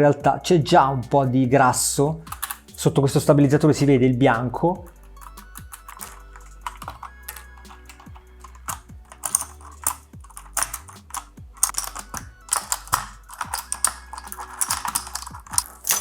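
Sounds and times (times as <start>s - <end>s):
quiet background music: 0.0s - 16.0s
plastic keyboard clicks and clatter: 2.3s - 2.8s, 4.9s - 16.0s.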